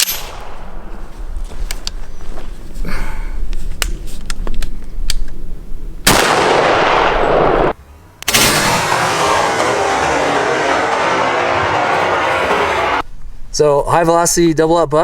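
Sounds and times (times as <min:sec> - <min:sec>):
shotgun firing: 0:06.1 - 0:07.7, 0:08.3 - 0:12.2
loud steady rushing noise: 0:08.3 - 0:13.0.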